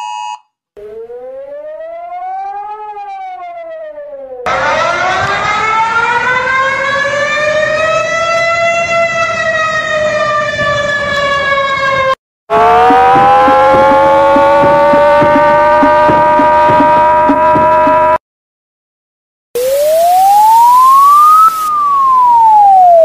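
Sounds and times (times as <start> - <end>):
warning siren wailing: 0.8 - 18.2, 19.6 - 23.0.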